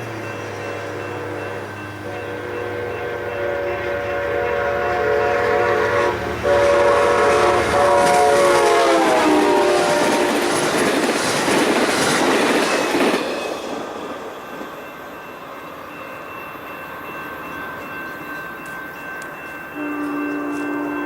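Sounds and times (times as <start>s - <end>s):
rush of passing train: 0.0s - 21.0s
locomotive horn chord: 0.4s - 10.6s, 19.8s - 21.0s.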